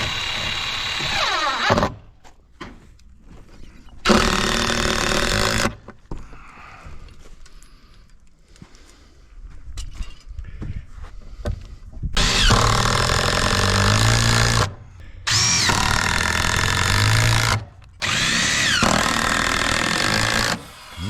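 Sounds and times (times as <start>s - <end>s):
power tool motor spinning: 0.0s - 2.0s, 4.0s - 5.8s, 12.2s - 14.7s, 15.3s - 21.0s.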